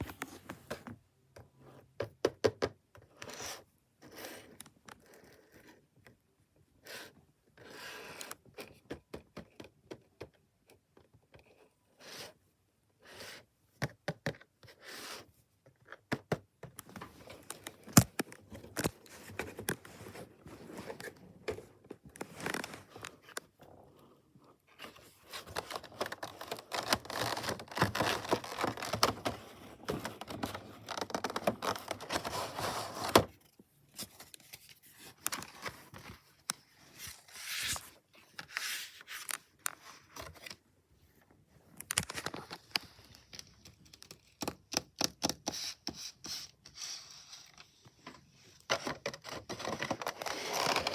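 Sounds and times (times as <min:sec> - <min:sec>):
packaging scraping and crinkling: 0:25.2 - 0:33.4, 0:48.7 - 0:50.9.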